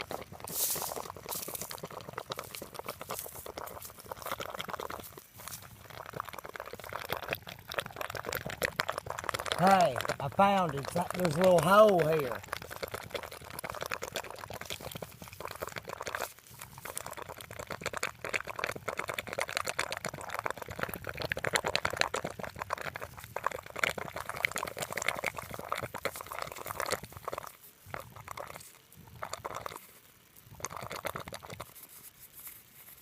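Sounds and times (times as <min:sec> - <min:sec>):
gurgling and popping from ground: 0:00.0 - 0:33.0.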